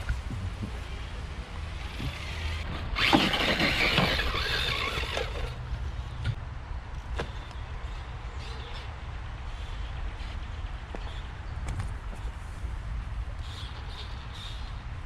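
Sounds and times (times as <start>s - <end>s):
electric motor whining: 1.7s - 5.6s.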